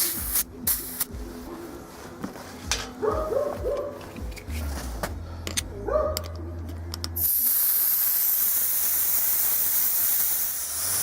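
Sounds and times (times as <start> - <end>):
air hissing out of tire valve: 0.0 - 1.1, 7.2 - 11.0.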